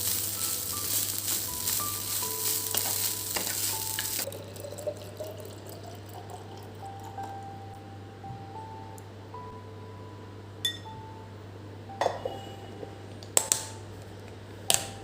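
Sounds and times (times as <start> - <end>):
sizzling hiss: 0.0 - 4.9
soft background music: 0.0 - 15.0.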